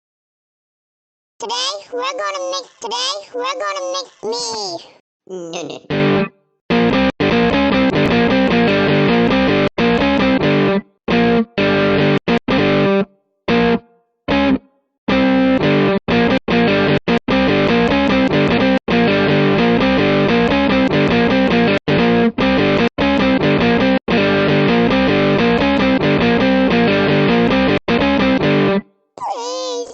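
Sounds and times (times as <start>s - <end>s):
distorted electric guitar rock: 5.9s - 28.8s.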